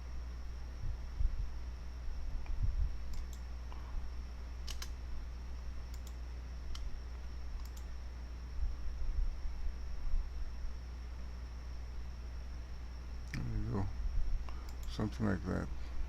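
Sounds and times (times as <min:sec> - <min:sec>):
sharp light clicks: 0:02.4 - 0:03.5, 0:04.6 - 0:05.0, 0:05.9 - 0:06.9, 0:07.6 - 0:07.9, 0:14.5 - 0:15.0.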